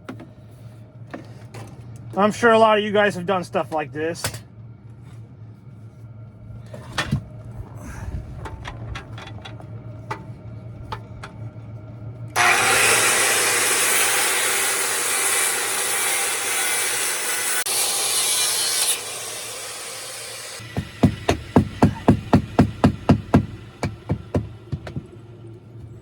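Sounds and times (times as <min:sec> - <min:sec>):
power saw cutting wood: 0:12.4 - 0:25.0.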